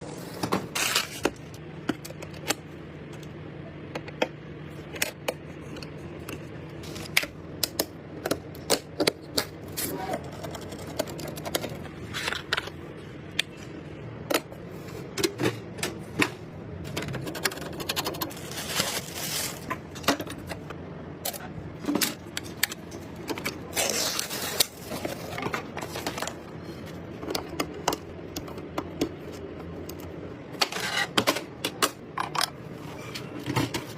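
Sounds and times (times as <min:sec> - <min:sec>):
steady low hum: 0:00.0 - 0:33.9
computer parts clicking and scraping: 0:09.7 - 0:12.7, 0:16.9 - 0:20.6, 0:30.6 - 0:32.0.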